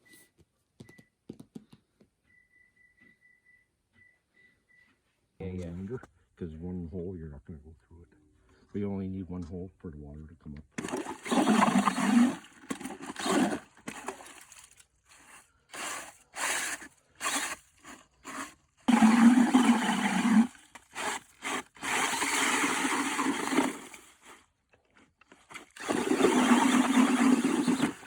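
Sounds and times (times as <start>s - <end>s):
shovel scraping ice and slush: 10.8s - 24.5s, 25.3s - 28.0s.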